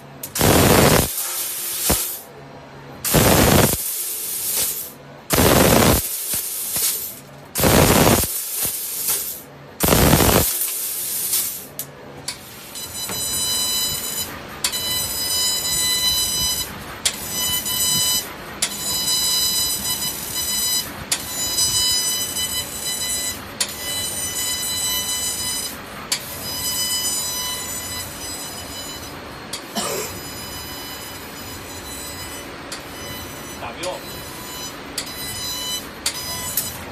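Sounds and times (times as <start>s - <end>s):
loud bursts of hissing: 0.4s - 2.2s, 3.1s - 11.6s
steady hiss: 0.4s - 2.2s, 3.1s - 11.6s.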